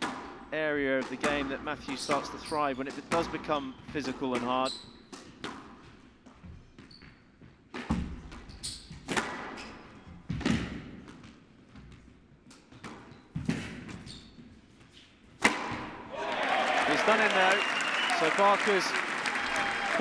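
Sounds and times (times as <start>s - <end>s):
squash ball hits echoing: 0.0s - 0.4s, 1.0s - 3.4s, 7.7s - 8.4s, 9.0s - 9.6s, 10.3s - 11.2s, 15.4s - 16.1s
shoe squeaks: 4.6s - 5.1s, 6.6s - 7.6s, 8.4s - 10.3s, 13.1s - 15.2s.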